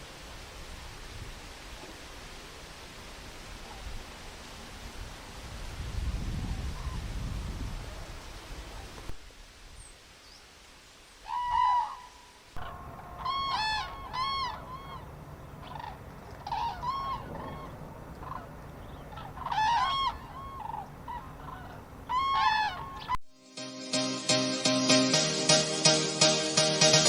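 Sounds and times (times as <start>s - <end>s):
waterfowl honking: 11.2s - 23.2s.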